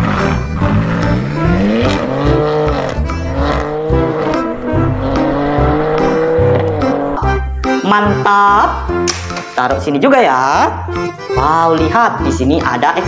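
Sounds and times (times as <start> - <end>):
race car engine: 0.0 - 7.3
background music: 0.0 - 13.0.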